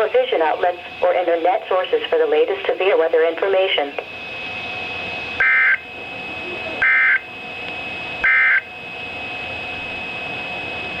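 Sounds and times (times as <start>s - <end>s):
radio whine and hiss: 0.0s - 8.6s
warbling data tone bursts: 5.4s - 7.3s, 8.2s - 8.7s.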